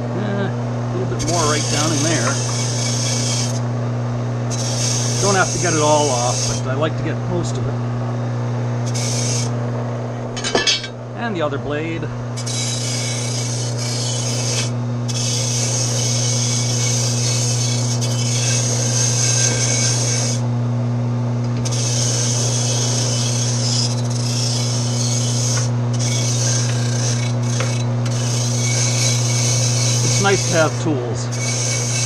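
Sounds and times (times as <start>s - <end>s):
motor-driven wire brush humming: 0.0s - 32.0s
brush scrubbing metal blade: 1.2s - 3.6s, 4.6s - 6.6s, 12.4s - 20.4s, 21.7s - 32.0s.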